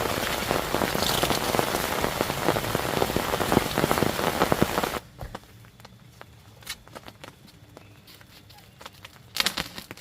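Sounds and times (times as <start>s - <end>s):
raindrops tapping: 0.0s - 5.0s
soft hiss of rain: 0.0s - 10.0s.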